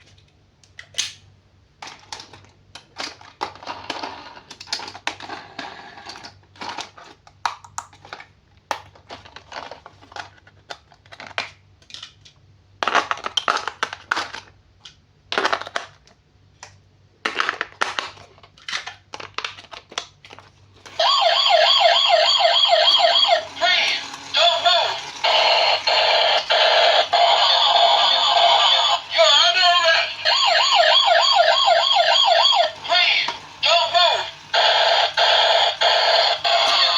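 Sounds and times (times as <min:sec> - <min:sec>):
toy electronic siren warbling: 0:20.9 - 0:36.9
toy parts clicking: 0:20.9 - 0:36.9.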